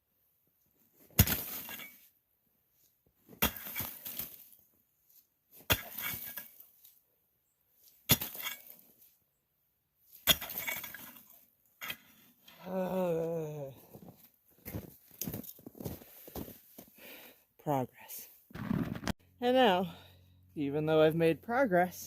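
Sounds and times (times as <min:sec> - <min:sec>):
axe striking ice: 0:01.2 - 0:02.1, 0:03.4 - 0:04.5, 0:05.7 - 0:06.6, 0:08.1 - 0:08.8, 0:10.2 - 0:12.1.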